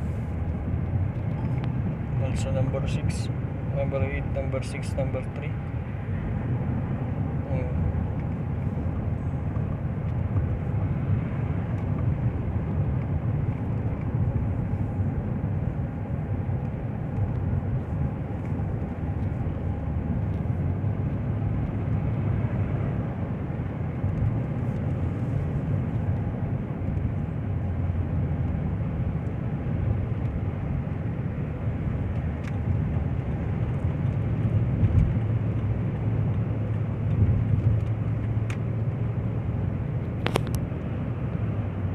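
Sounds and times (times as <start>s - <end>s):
car engine and road noise: 0.0s - 41.9s.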